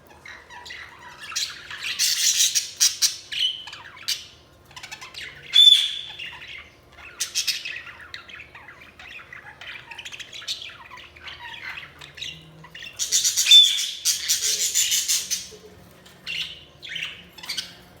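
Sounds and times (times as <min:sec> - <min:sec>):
budgerigars chirping and chattering: 0:00.0 - 0:18.0.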